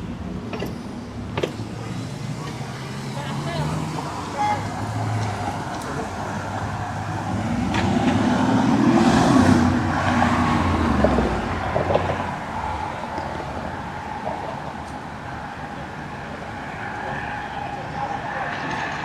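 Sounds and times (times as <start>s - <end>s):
vehicle passing by: 1.7s - 14.8s.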